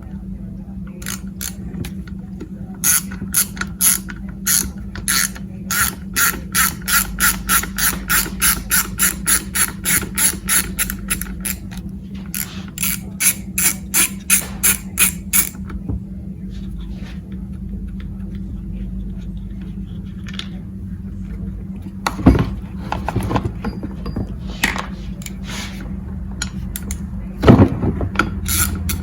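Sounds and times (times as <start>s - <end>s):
ratchet wrench clicking: 1.0s - 1.6s, 2.8s - 15.6s, 26.4s - 27.0s, 28.4s - 29.0s.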